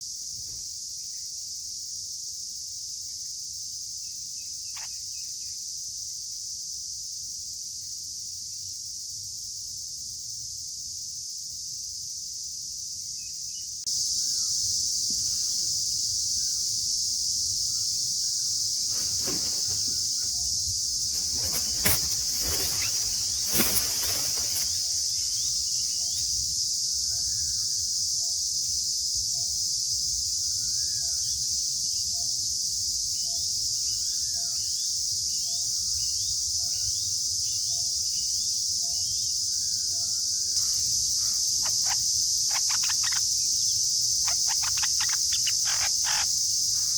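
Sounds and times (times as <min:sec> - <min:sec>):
insects droning: 0:00.0 - 0:46.9
knocks or rustles: 0:18.8 - 0:20.5, 0:21.1 - 0:25.0.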